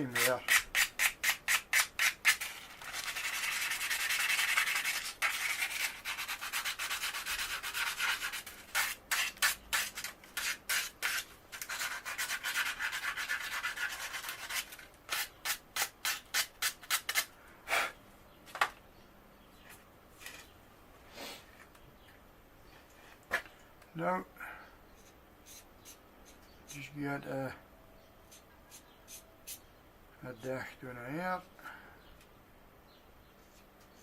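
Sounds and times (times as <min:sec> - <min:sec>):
sandpaper rubbing: 0:00.0 - 0:17.3.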